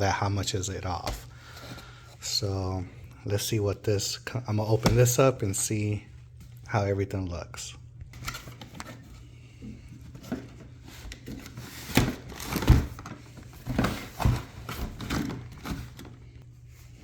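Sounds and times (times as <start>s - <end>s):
packaging knocks and rustles: 10.0s - 16.2s.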